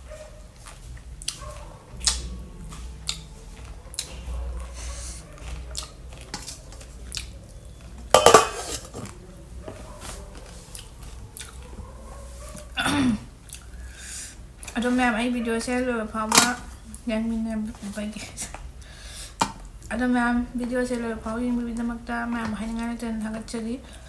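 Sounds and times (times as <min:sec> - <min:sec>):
person chewing fruit: 0:00.6 - 0:04.7, 0:05.4 - 0:07.8, 0:10.4 - 0:11.6, 0:13.4 - 0:14.0
cutlery clicking on a dish: 0:08.1 - 0:09.0.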